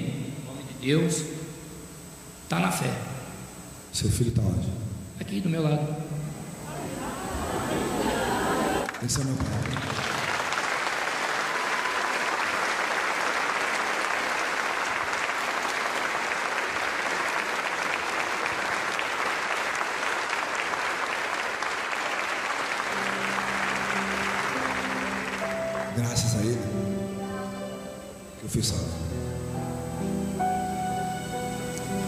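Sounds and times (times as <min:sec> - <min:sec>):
audience applauding: 0:06.7 - 0:27.1
soft music with low notes: 0:22.9 - 0:32.0.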